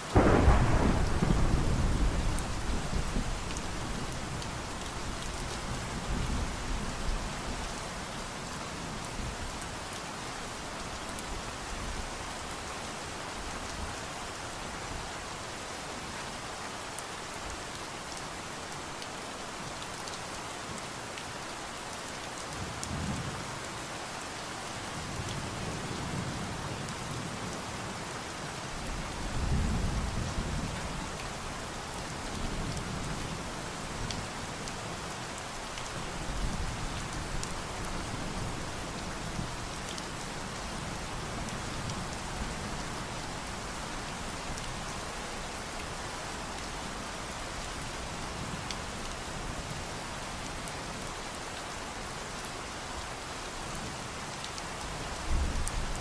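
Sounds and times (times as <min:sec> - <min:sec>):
steady rain hiss: 0:00.0 - 0:56.0
thunder rumbling: 0:00.1 - 0:03.9.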